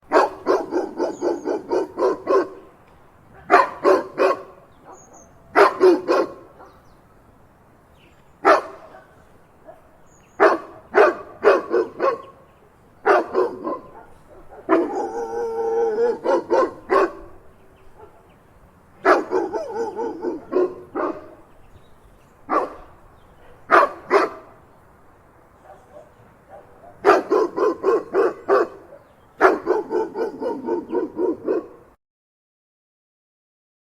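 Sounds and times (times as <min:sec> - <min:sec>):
dog drawn-out call: 0:00.1 - 0:02.7, 0:03.4 - 0:06.8, 0:08.4 - 0:18.3, 0:19.0 - 0:21.5, 0:22.5 - 0:24.6, 0:25.6 - 0:31.9
big dog barking: 0:00.1 - 0:06.9, 0:08.4 - 0:18.4, 0:19.0 - 0:21.7, 0:22.5 - 0:24.6, 0:25.6 - 0:32.0.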